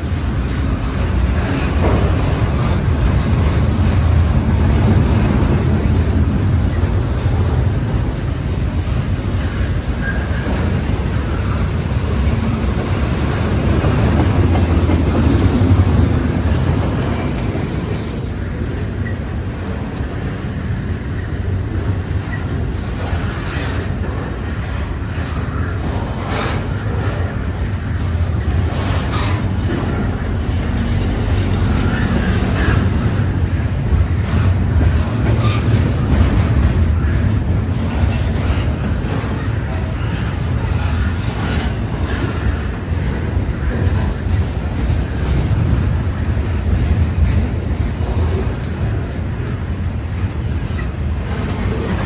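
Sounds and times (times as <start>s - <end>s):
brief sharp train noises: 0.0s - 8.2s
train wheels rumbling on rail: 0.0s - 52.0s.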